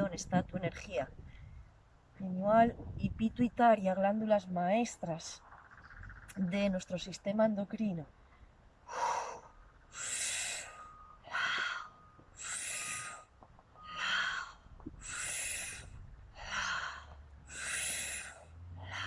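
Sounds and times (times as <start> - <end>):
woman breathing forcefully: 8.4 - 19.0.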